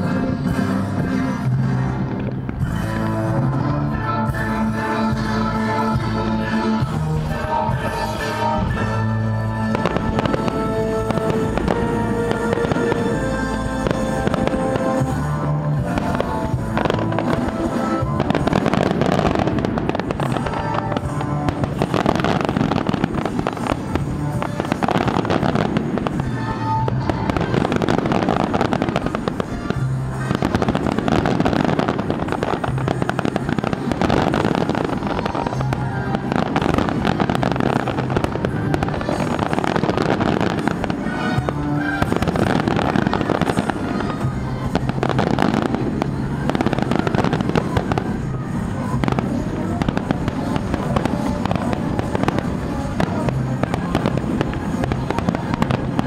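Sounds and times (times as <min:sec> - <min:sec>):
fireworks bangs and crackling: 0:00.0 - 0:56.0
music playing: 0:00.0 - 0:56.0.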